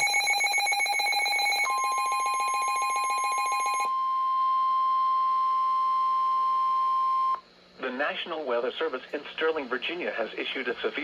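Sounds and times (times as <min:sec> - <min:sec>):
pulsing ringing alert tone: 0:00.0 - 0:03.9.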